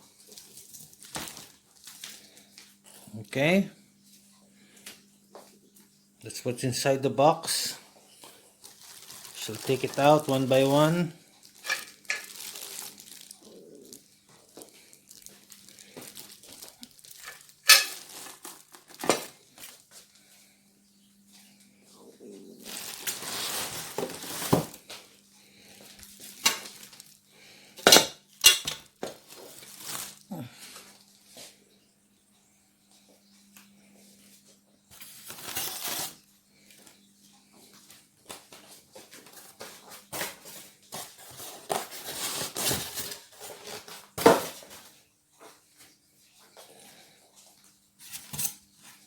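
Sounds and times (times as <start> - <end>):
packaging rustling: 0.2 - 2.4, 8.2 - 19.9, 22.5 - 27.2, 29.0 - 30.3, 34.9 - 36.2, 39.1 - 44.9
metal parts clinking and knocking: 17.2 - 18.0.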